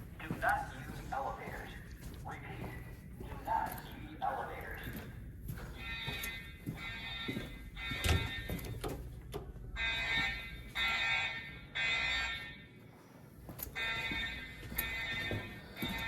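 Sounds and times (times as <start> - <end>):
evacuation alarm tones: 3.4 - 12.9, 13.6 - 16.0.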